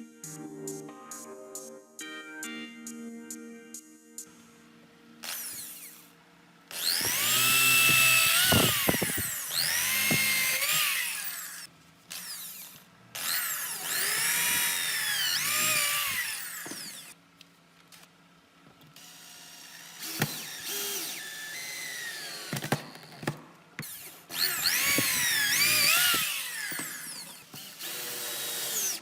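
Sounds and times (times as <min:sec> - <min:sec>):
electric drill motor whine: 0:05.2 - 0:17.2, 0:19.0 - 0:29.0.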